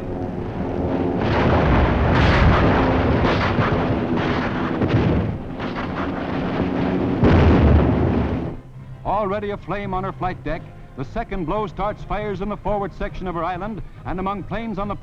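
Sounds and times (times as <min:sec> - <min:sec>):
explosions and heavy gunfire: 0:01.2 - 0:08.6.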